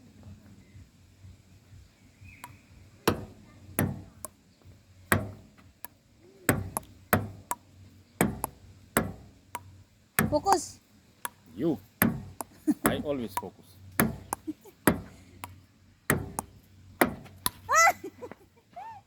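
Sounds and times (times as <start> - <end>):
ping-pong ball knocking: 2.4 - 4.4, 5.1 - 17.6.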